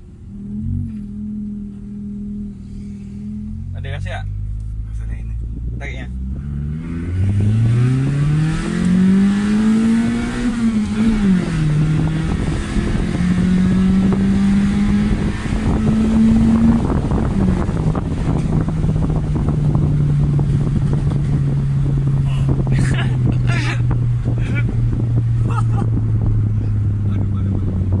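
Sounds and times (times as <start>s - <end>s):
car engine revving: 0.0s - 28.0s
exhaust crackling and popping: 0.0s - 28.0s.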